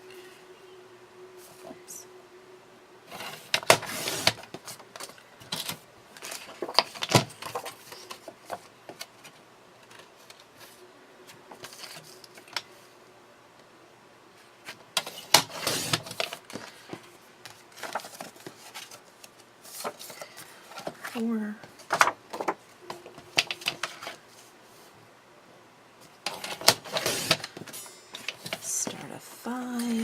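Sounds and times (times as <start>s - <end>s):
paper and tools clicking rustling: 3.1s - 10.8s, 14.6s - 21.2s, 26.2s - 28.7s.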